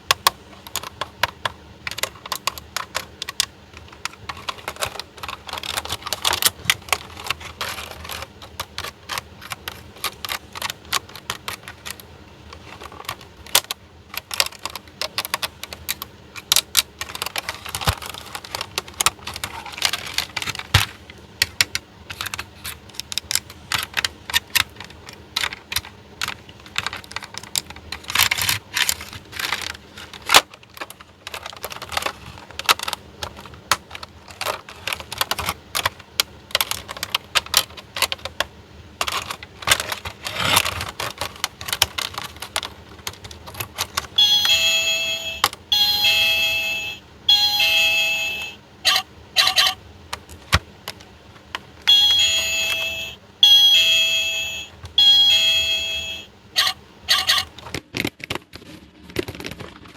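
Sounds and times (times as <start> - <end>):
plastic toy pieces clicking: 0.1 - 46.2.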